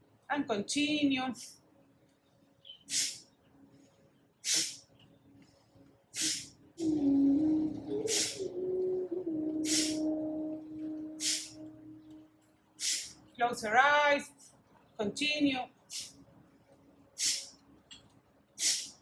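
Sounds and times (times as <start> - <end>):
forceful nasal exhalations: 2.9 - 3.2, 4.4 - 4.8, 6.2 - 7.1, 7.9 - 8.6, 9.6 - 10.1, 11.2 - 11.6, 12.8 - 13.2, 15.9 - 16.1, 17.2 - 17.5, 18.6 - 19.0
steady humming: 6.2 - 13.1.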